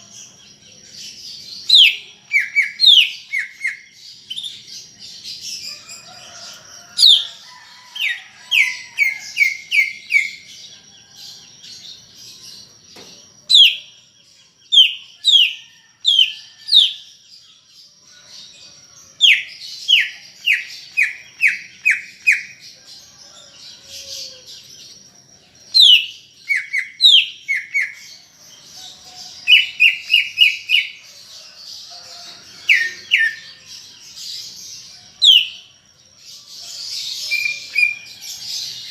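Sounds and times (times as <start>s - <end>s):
bird whistling song: 1.6s - 4.7s, 13.5s - 13.9s, 14.8s - 17.1s, 25.7s - 28.1s, 35.2s - 35.7s, 36.8s - 38.9s.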